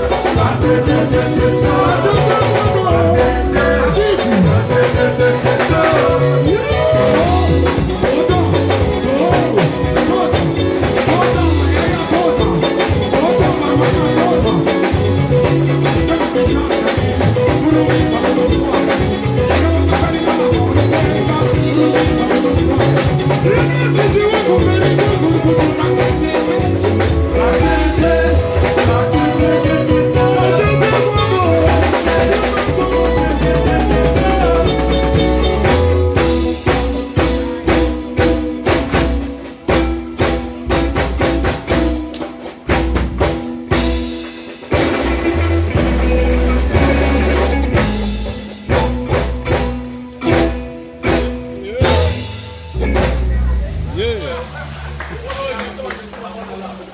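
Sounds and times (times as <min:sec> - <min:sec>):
band playing rumba: 0:00.0 - 0:56.9.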